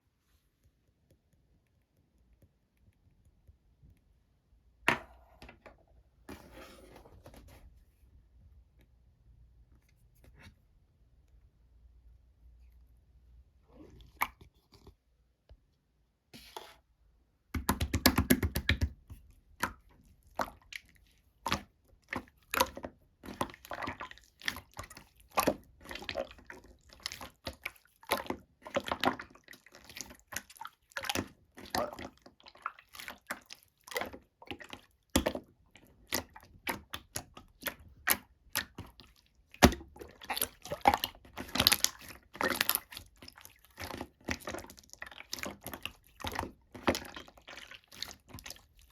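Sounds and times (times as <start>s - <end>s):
slime squished by hand: 17.6s - 48.9s.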